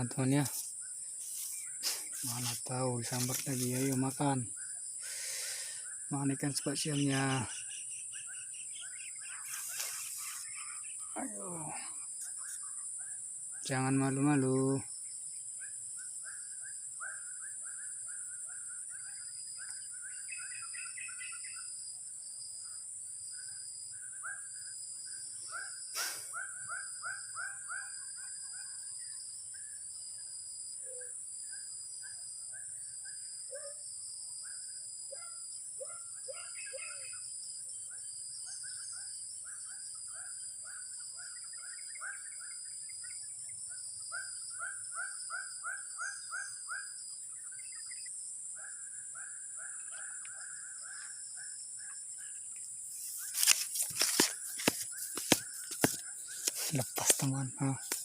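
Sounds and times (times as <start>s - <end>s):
birds chirping: 0.0s - 16.7s, 49.9s - 58.0s
high insect drone: 0.0s - 58.0s.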